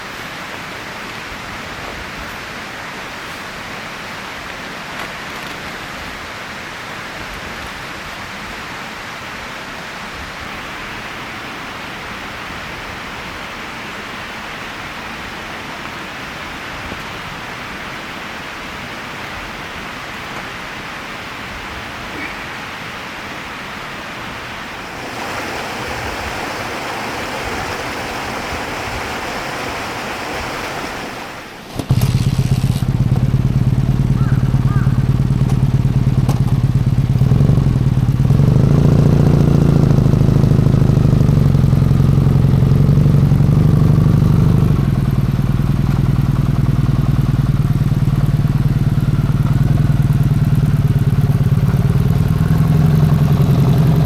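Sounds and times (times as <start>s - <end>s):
steady hiss: 0.0s - 31.8s
motorcycle engine starting and idling: 30.9s - 54.0s.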